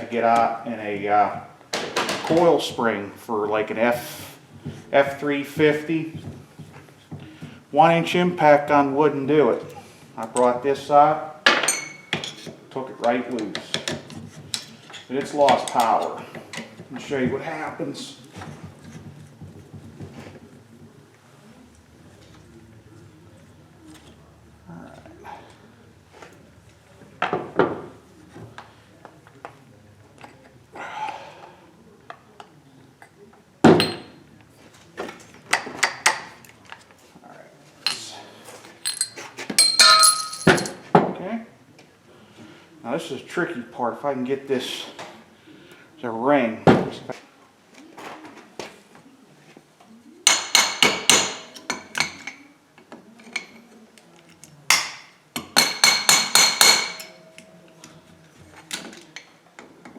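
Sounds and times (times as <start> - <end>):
light metal clinks: 38.8 - 40.8
metal parts knocking on workbench: 38.8 - 40.8
metal tools striking metal: 38.8 - 40.8.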